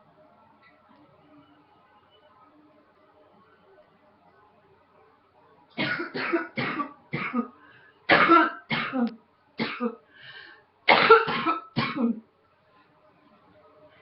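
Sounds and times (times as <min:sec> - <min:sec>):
woman coughing: 0:05.8 - 0:07.5, 0:08.1 - 0:10.0, 0:10.9 - 0:12.2.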